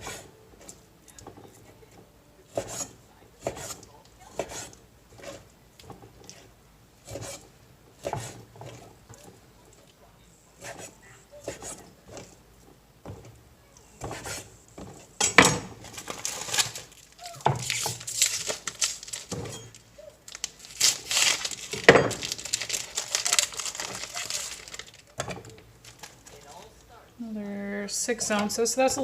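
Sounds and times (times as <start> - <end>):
plastic packaging crinkling: 15.8 - 27.0.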